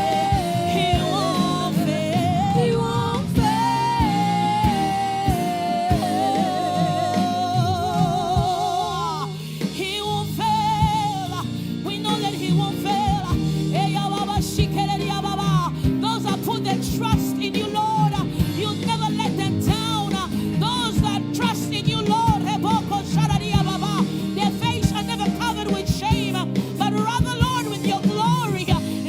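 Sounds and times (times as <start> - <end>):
drum hits: 0.0 - 10.0
gospel song with band: 0.0 - 29.0
person singing with vibrato: 0.0 - 29.0.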